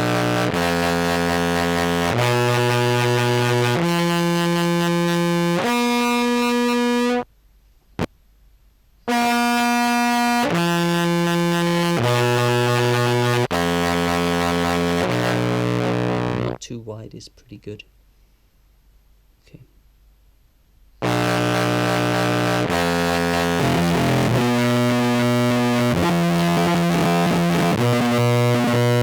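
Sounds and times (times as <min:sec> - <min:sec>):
distorted clarinet notes: 0:00.0 - 0:07.2, 0:09.1 - 0:16.6, 0:21.0 - 0:29.0.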